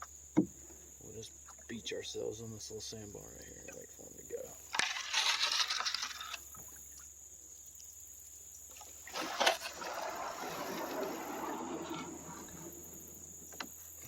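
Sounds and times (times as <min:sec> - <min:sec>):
canoe hull knock: 0:00.0 - 0:00.8
hull scraping on sand: 0:09.1 - 0:13.9.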